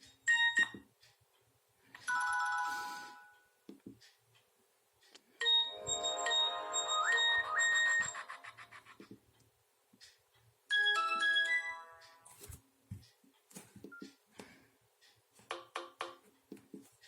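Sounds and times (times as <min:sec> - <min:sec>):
polyphonic ringtone melody: 0:02.1 - 0:03.3, 0:05.4 - 0:08.8, 0:10.7 - 0:12.3
ringing chime: 0:05.4 - 0:08.3
phone ringtone previews: 0:05.4 - 0:08.7.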